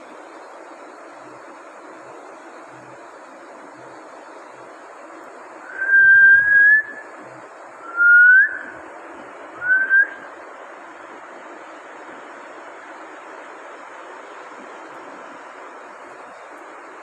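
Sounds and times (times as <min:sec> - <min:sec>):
background hiss: 0:00.0 - 0:17.0
whistled notes: 0:05.7 - 0:07.1, 0:07.8 - 0:08.8, 0:09.6 - 0:10.2.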